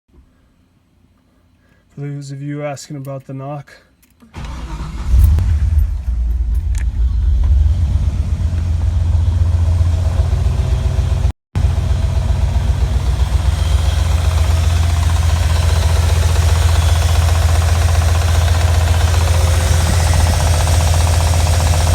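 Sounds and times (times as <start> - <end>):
rotary engine pulsing unevenly: 5.5 - 21.9.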